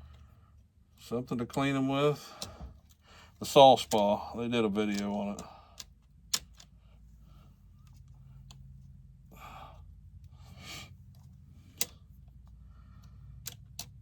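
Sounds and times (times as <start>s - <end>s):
low steady hum: 0.0s - 14.0s
person breathing out: 9.3s - 11.0s.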